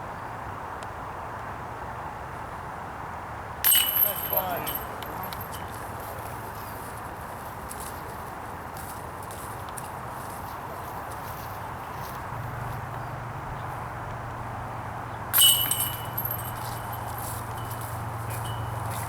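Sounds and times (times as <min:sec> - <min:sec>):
steady background noise: 0:00.0 - 0:19.0
disc striking metal basket: 0:03.6 - 0:06.0, 0:15.3 - 0:19.0
ringing metallic jingle: 0:03.6 - 0:06.3, 0:15.4 - 0:19.0.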